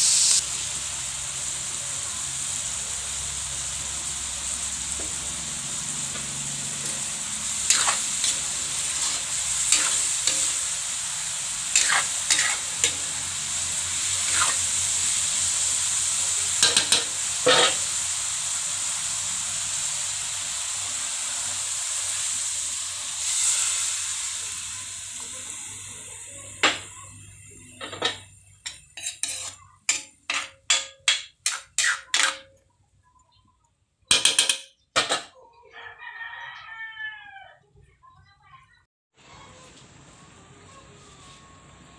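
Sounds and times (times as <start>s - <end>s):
noodles sizzling in a pan: 0.0s - 32.6s
utensil knocking and scraping pan: 7.6s - 10.6s, 11.7s - 13.0s, 16.6s - 17.8s, 27.8s - 32.5s.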